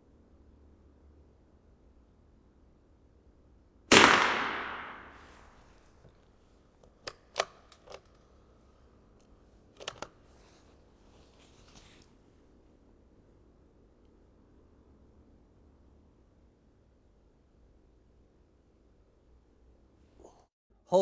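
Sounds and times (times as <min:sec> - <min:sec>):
rifle shot echoing: 0:03.9 - 0:05.6
rifle action metallic clicks: 0:07.0 - 0:08.2.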